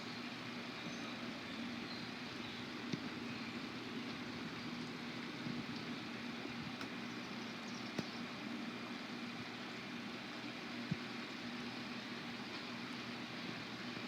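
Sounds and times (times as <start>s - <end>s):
faint steady hum: 0.0s - 14.0s
steady rain falling: 0.0s - 14.0s
raindrop ticks: 2.8s - 8.2s, 10.8s - 11.5s.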